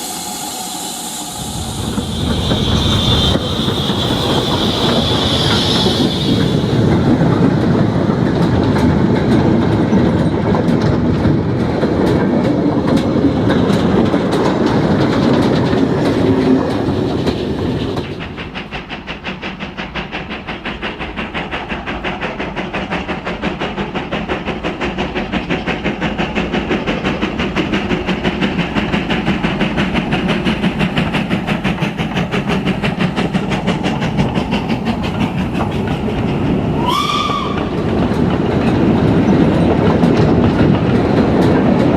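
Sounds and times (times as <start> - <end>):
model train wheels clicking: 1.5 - 41.9.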